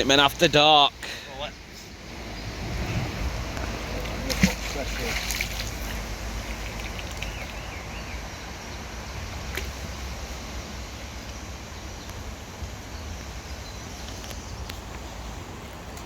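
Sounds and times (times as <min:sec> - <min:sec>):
background hiss: 0:00.0 - 0:16.0
low rumble: 0:02.0 - 0:04.4.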